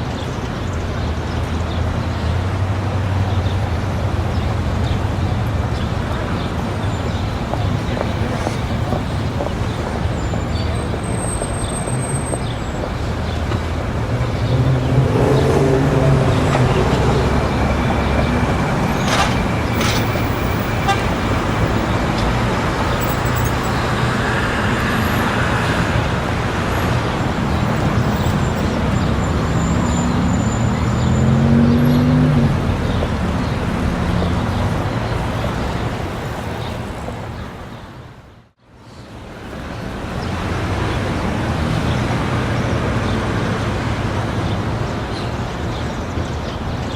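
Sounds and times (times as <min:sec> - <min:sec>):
traffic roar: 0:00.0 - 0:46.9
vehicle engines passing: 0:00.0 - 0:46.9.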